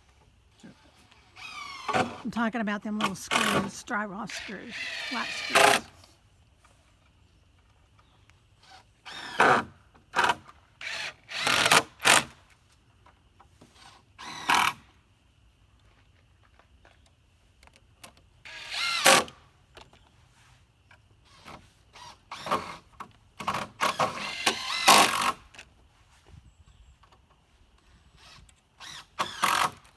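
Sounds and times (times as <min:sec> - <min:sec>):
power drill driving screws: 0:01.2 - 0:02.2, 0:03.3 - 0:03.7, 0:04.4 - 0:05.9, 0:08.6 - 0:12.3, 0:18.5 - 0:19.3, 0:23.4 - 0:25.4, 0:28.2 - 0:29.9.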